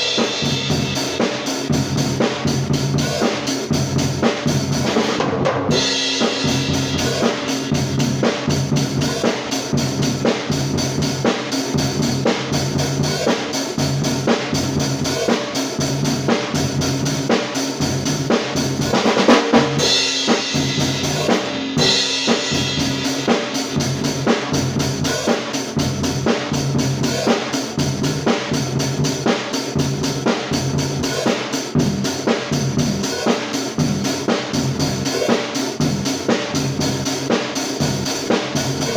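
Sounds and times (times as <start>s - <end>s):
kick and snare drum beat: 0.0s - 38.9s.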